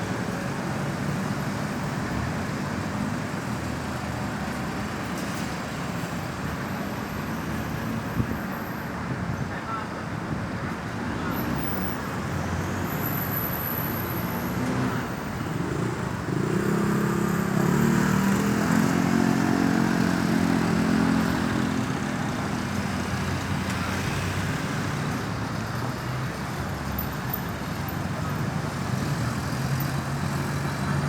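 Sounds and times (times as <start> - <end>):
steady traffic noise: 0.0 - 31.0
vehicle engine passing: 14.7 - 22.1.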